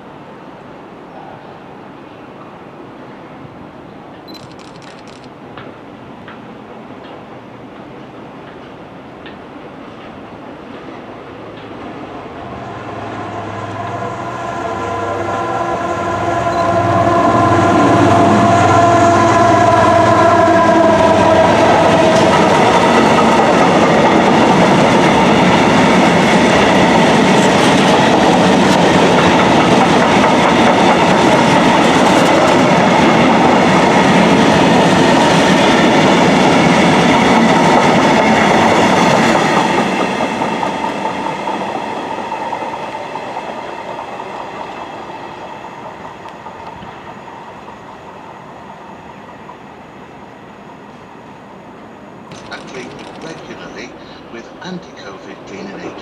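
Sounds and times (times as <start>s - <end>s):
wagons rumbling over rails: 5.0s - 48.2s, 51.6s - 56.0s
locomotive engine passing: 11.8s - 47.8s.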